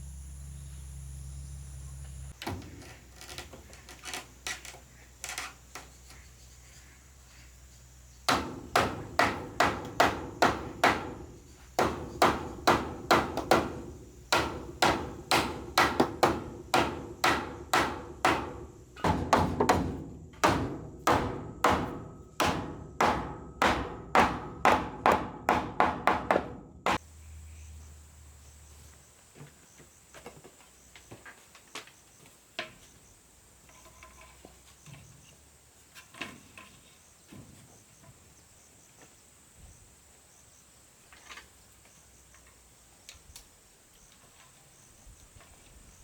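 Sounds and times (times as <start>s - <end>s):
hammer blows on wood: 8.3s - 27.0s.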